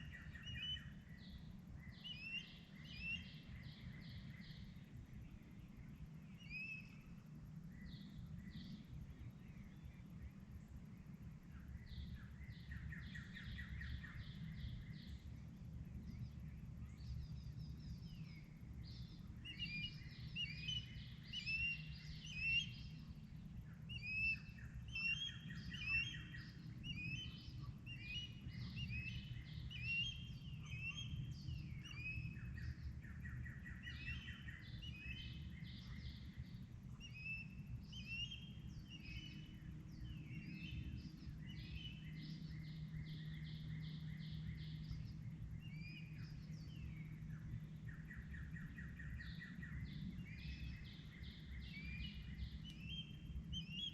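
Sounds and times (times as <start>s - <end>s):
birds singing and calling: 0.0s - 53.9s
steady low rumble: 7.3s - 53.9s.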